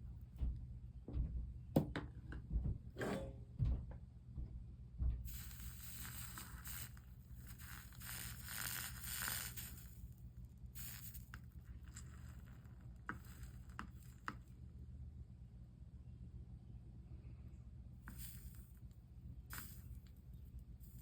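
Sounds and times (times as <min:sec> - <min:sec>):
steady low hum: 0:00.0 - 0:21.0
soldering hissing and scraping: 0:05.3 - 0:14.7, 0:18.0 - 0:21.0.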